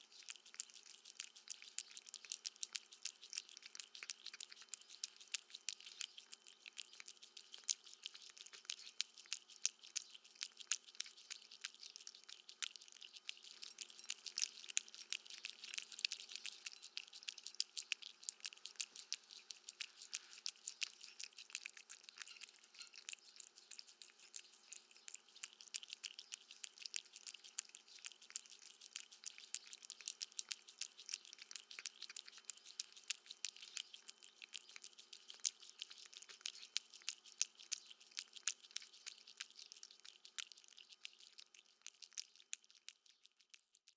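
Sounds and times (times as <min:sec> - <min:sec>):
cat chewing food: 0:00.0 - 0:43.9.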